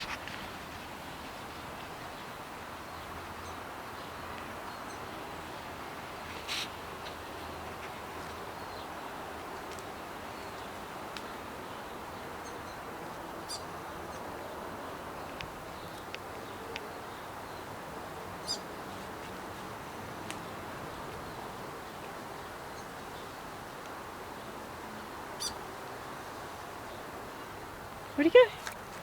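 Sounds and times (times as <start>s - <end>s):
steady background hiss: 0.0s - 29.0s
bird chips and trills: 18.4s - 18.7s, 25.4s - 25.6s.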